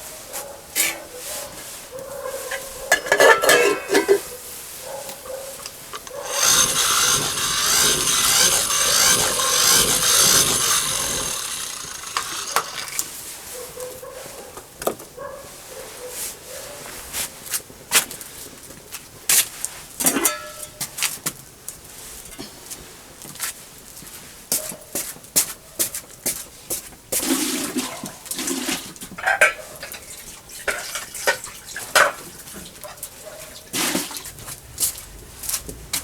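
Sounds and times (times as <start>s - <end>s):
utensil scraping: 6.0s - 13.0s.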